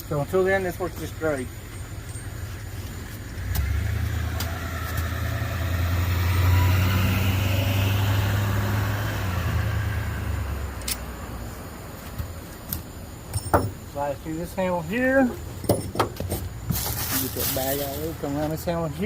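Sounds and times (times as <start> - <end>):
vehicle driving past: 3.2 - 11.9.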